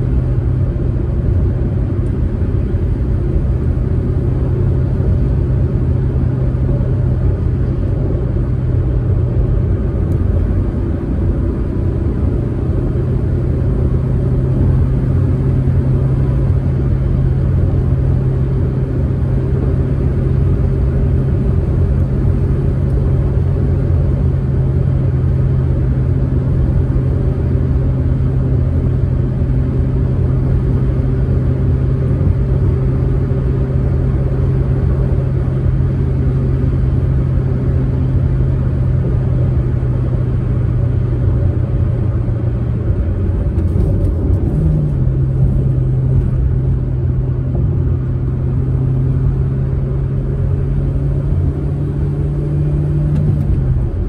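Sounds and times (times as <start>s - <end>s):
car engine droning: 0.0s - 54.0s
road and tyre rumble: 0.0s - 54.0s.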